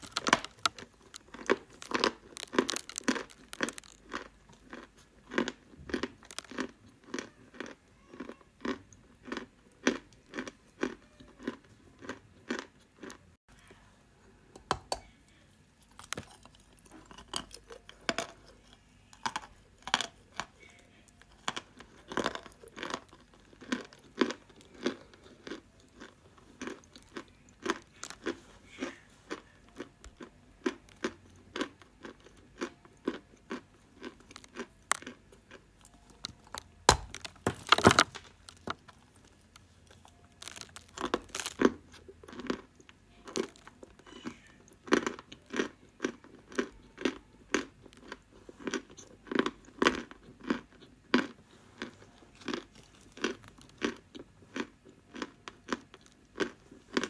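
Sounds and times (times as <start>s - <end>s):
chalk crunching while chewed: 0.0s - 13.3s, 15.7s - 57.0s.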